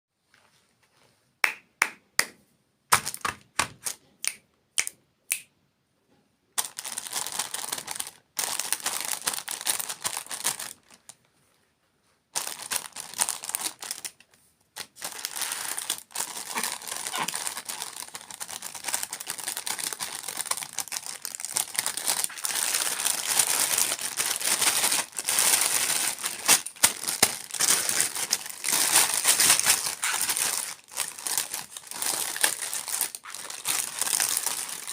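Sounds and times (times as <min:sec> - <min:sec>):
plastic packaging crinkling: 0:06.6 - 0:11.1, 0:12.4 - 0:34.9.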